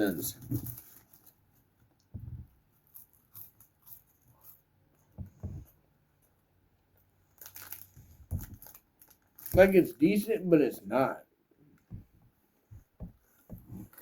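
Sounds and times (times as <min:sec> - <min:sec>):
small clicks and rustles: 0:00.3 - 0:09.7, 0:11.8 - 0:14.0
soft thuds: 0:02.1 - 0:02.6, 0:05.2 - 0:05.7, 0:11.9 - 0:14.0.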